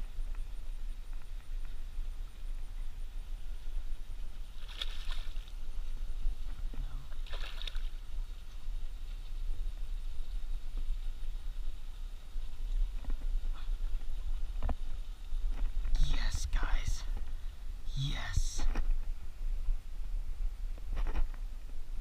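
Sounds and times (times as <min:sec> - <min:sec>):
steady low rumble: 0:08.2 - 0:22.0.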